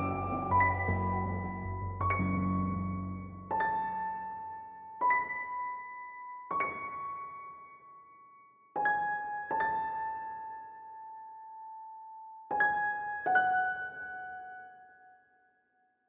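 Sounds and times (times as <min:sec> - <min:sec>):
slow piano notes: 0:00.0 - 0:08.1.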